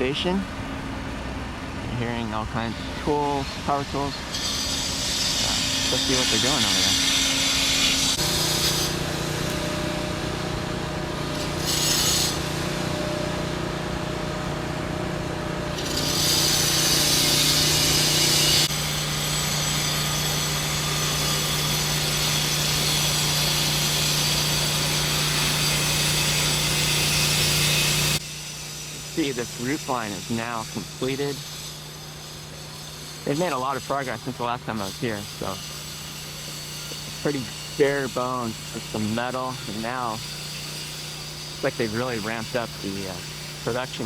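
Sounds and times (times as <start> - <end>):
low machine hum: 0.0 - 28.2
power tool cutting noise: 2.7 - 44.0.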